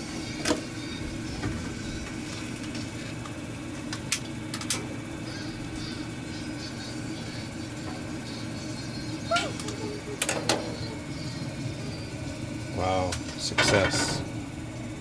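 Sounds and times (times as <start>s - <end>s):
steady low hum: 0.0s - 15.0s
gas stove igniter clicking: 3.9s - 4.9s.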